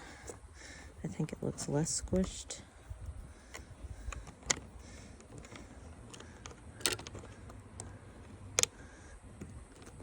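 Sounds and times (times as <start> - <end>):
plastic housing clicks: 3.5 - 7.9, 8.5 - 8.8.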